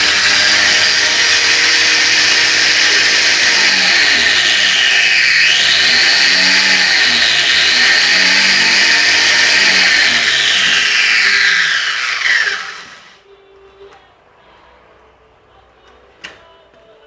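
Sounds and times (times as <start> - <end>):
pressure washer motor whining: 0.0 - 13.2.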